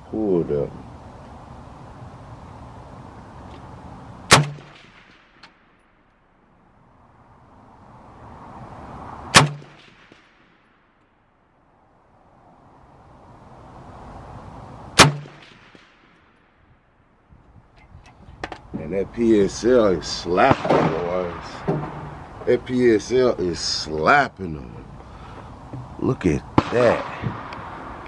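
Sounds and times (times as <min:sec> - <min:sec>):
rifle shots: 0:04.3 - 0:05.5, 0:09.3 - 0:10.5, 0:15.0 - 0:16.2, 0:20.4 - 0:22.3, 0:26.6 - 0:27.8.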